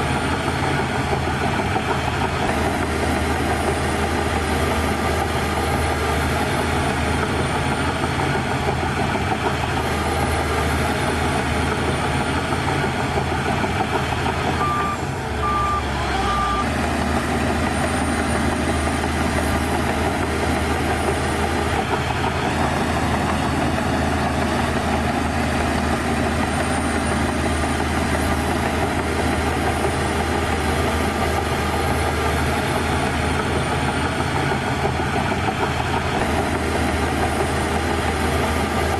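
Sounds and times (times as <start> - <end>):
diesel engine running: 0.0 - 38.9
backup alarm beeps: 14.6 - 16.6.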